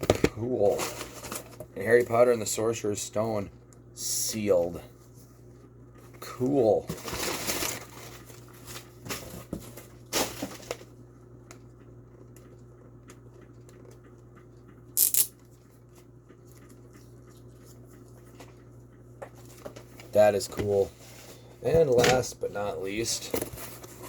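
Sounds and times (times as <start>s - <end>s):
packaging rustling and crinkling: 6.8s - 10.9s.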